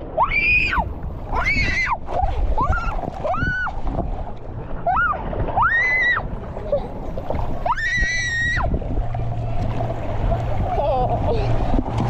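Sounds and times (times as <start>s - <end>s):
children squealing: 7.6s - 8.7s.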